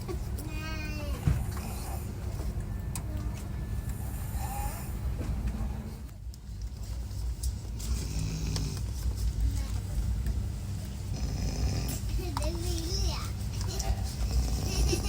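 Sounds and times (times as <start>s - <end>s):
train rumble: 0.0s - 15.0s
person snoring: 11.1s - 12.0s.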